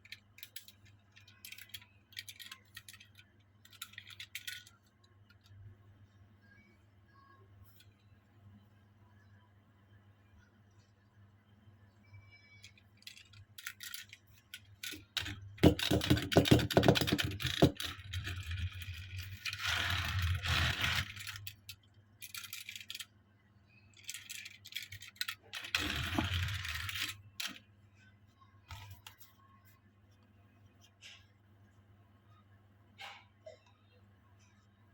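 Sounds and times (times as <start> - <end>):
toy cars clicking and rattling: 0.0 - 5.6, 12.6 - 23.2, 24.0 - 27.6
packaging rustling and scraping: 16.9 - 21.5, 25.4 - 27.2.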